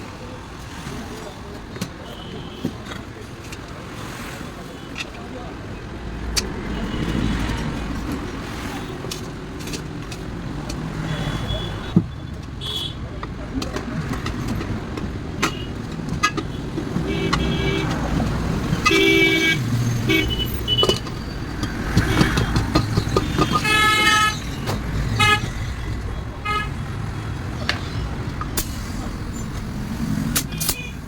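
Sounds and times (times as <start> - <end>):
road traffic rumbling: 0.0 - 31.0
sharp clicks and knocks: 6.2 - 31.0
vehicle horn honks: 18.8 - 21.0, 23.3 - 24.4, 25.2 - 25.5, 26.4 - 26.8.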